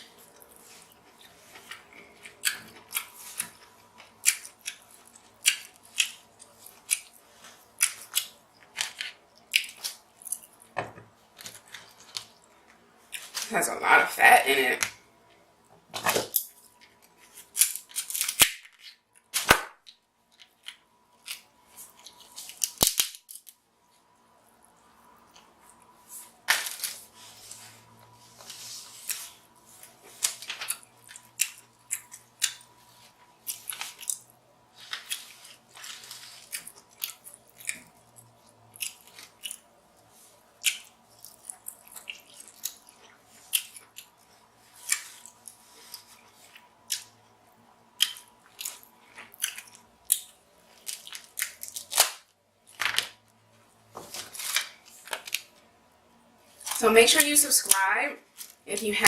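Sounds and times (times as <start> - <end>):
scissors cracking crab shells: 17.5 - 19.5, 22.4 - 23.6.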